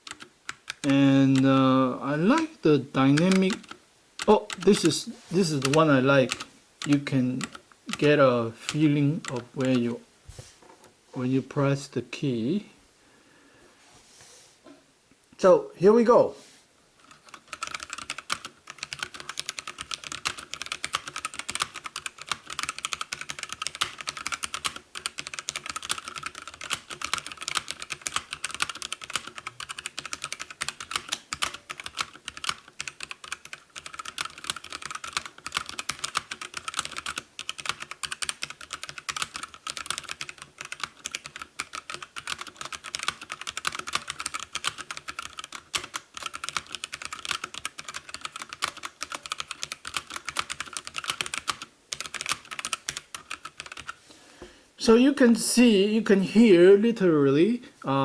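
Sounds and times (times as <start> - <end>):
fast keyboard typing: 0.0 - 1.6, 2.2 - 10.0, 17.0 - 54.0.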